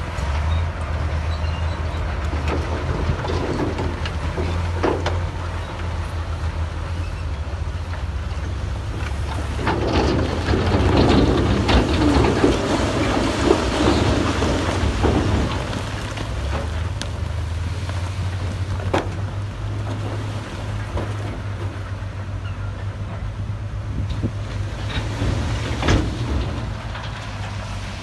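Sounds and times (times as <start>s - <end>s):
heavy diesel engine droning: 0.0s - 28.0s
noisy rattle: 7.9s - 16.9s.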